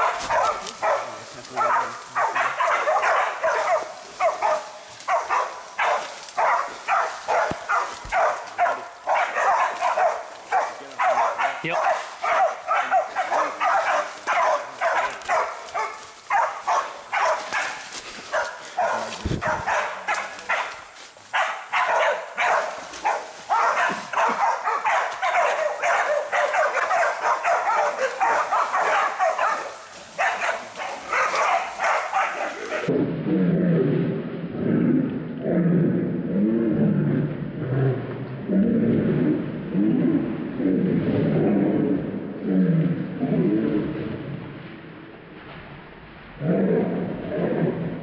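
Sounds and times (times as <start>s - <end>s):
dogs barking rapidly: 0.0s - 32.9s.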